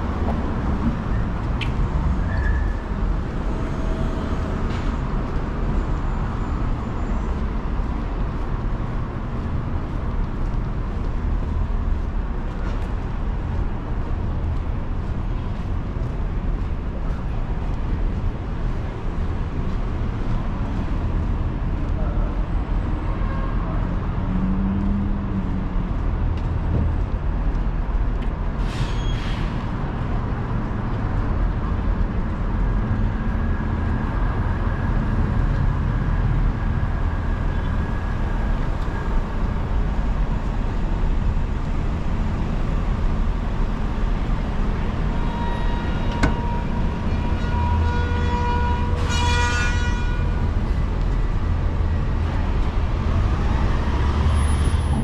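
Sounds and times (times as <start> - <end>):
traffic rumble: 0.0 - 55.0
brake squeal: 1.1 - 7.5, 28.6 - 29.7, 44.7 - 50.3, 54.2 - 55.0
air brake hiss: 28.6 - 29.6.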